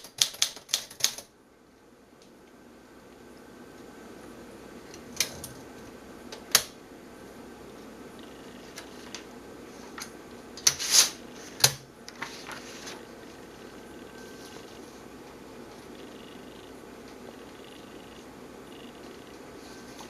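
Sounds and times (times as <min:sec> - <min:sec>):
low hum: 0:11.2 - 0:20.0.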